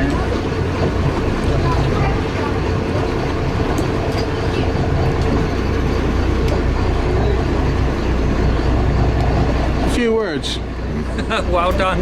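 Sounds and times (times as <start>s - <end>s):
boat engine rumbling: 0.0s - 12.0s
water noise: 0.0s - 12.0s
wind: 0.0s - 12.0s.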